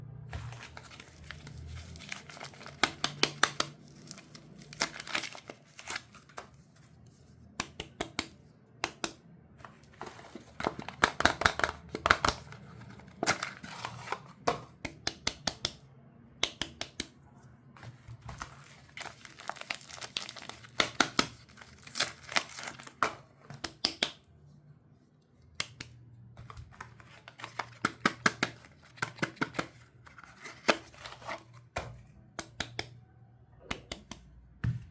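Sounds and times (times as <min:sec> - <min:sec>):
packaging crinkling and tearing: 0:00.4 - 0:06.4, 0:18.3 - 0:23.1.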